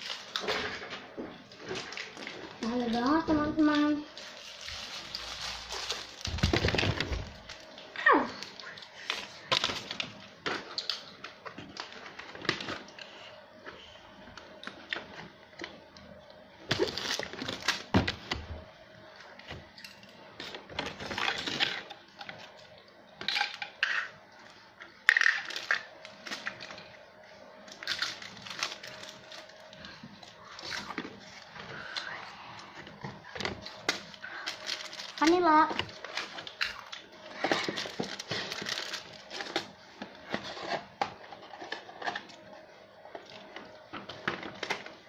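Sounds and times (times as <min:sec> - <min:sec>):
snack packaging rustling: 0:00.0 - 0:13.9, 0:16.7 - 0:18.2, 0:25.0 - 0:27.0, 0:27.6 - 0:45.0
faint steady hum: 0:00.0 - 0:45.0.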